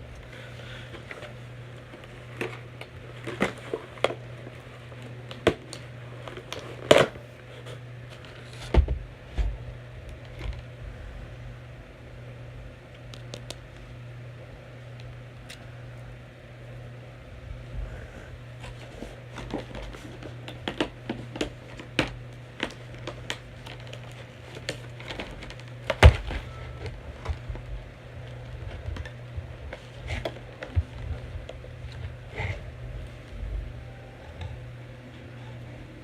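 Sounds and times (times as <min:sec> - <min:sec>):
steady low hum: 0:00.0 - 0:36.0
toy packaging clicking and knocking: 0:19.4 - 0:27.6.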